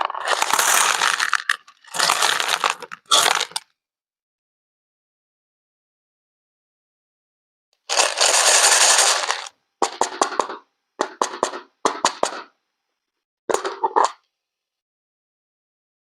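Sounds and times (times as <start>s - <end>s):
sharp clicks and taps: 9.8s - 12.6s.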